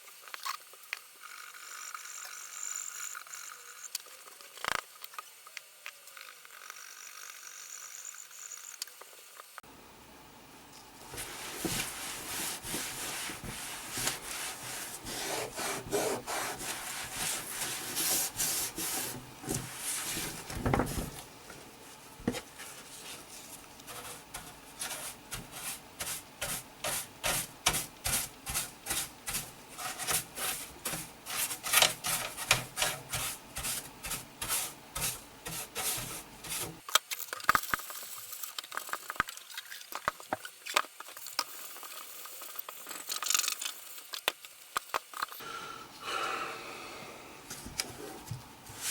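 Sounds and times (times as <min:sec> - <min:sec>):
scrubbing on plastic case: 0:11.1 - 0:21.2, 0:22.0 - 0:36.8.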